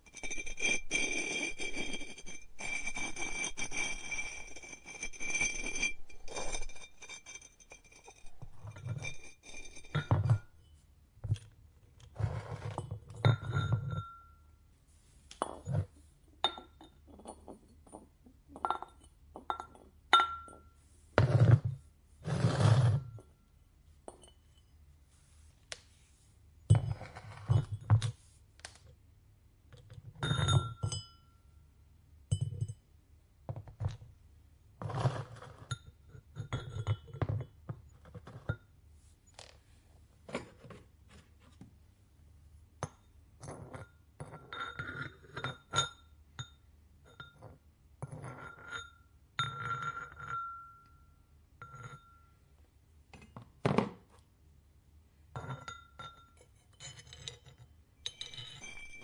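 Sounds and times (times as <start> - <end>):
ceramic ware knocking and clinking: 0.1 - 11.5, 12.1 - 14.5, 15.3 - 21.8, 24.1 - 24.6, 26.7 - 28.1, 30.1 - 31.4, 32.3 - 32.8, 34.9 - 38.7, 42.8 - 52.3, 55.3 - 59.0.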